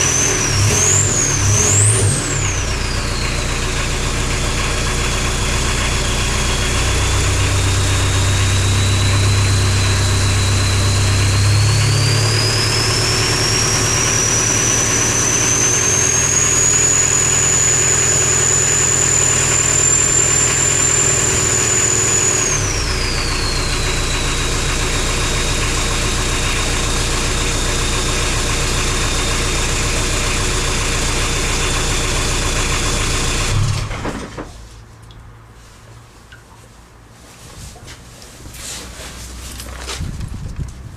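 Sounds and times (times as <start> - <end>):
diesel engine running: 0.0 - 34.5
turbo whistle: 11.9 - 24.3.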